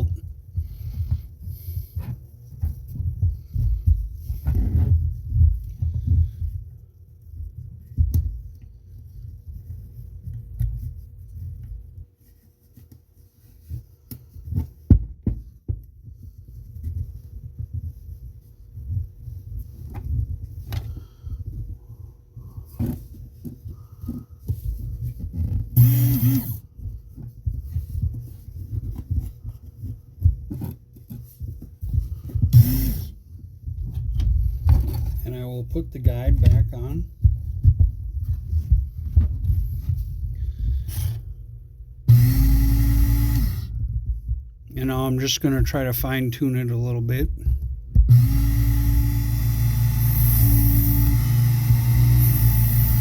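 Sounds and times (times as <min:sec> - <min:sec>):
handling thumps: 0:13.7 - 0:18.0
knife sharpener motor running: 0:25.8 - 0:26.6, 0:48.1 - 0:53.0.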